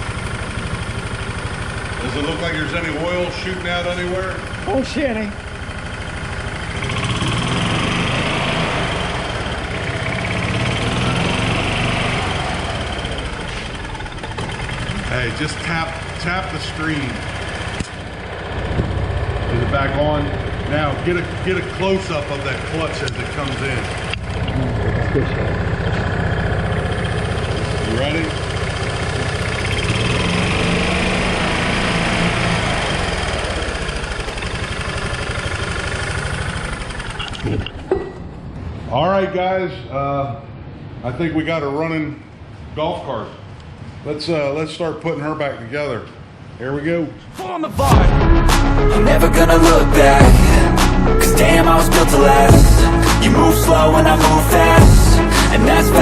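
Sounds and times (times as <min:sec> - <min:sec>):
golf cart engine running: 0:00.0 - 0:38.7, 0:47.8 - 0:56.0
drive clutch engaging: 0:13.1 - 0:15.1, 0:25.6 - 0:38.2.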